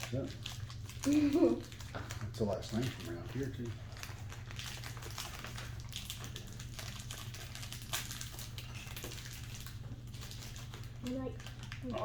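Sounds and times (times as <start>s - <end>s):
plastic wrapper crinkling: 0.0s - 12.0s.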